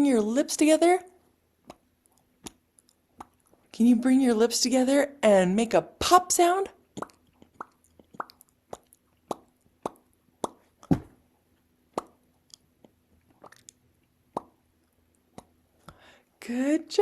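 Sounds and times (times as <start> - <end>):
lip pops: 1.6 - 3.5, 6.9 - 11.0, 11.9 - 14.6.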